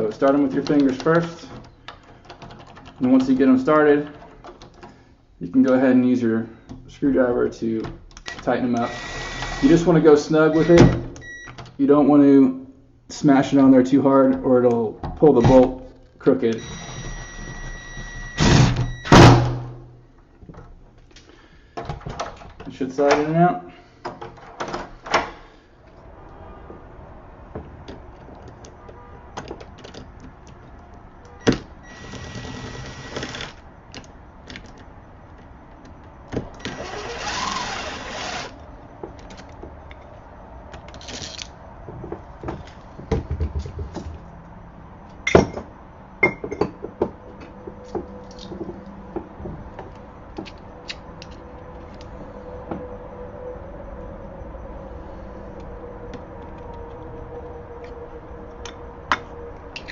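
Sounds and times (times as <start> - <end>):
clicks and knocks on lock: 0.1 - 3.5, 4.1 - 4.9, 27.7 - 31.6.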